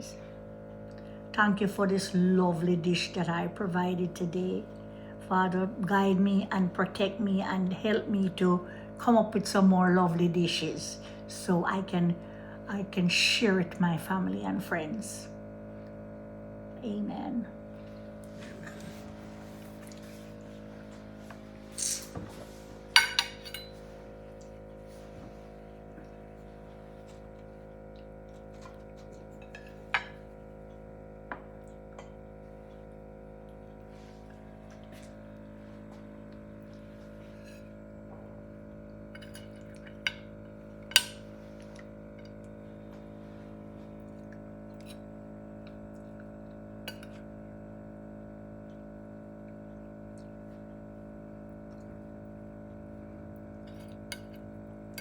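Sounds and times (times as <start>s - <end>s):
steady low hum: 0.0s - 55.0s
cutlery clinking on plates: 23.0s - 23.8s.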